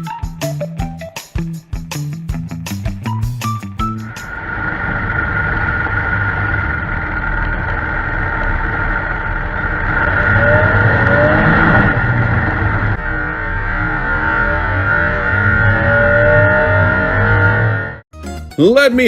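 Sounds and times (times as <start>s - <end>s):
plucked music: 0.0s - 4.3s, 18.2s - 18.7s
motor vehicle noise: 2.2s - 18.0s.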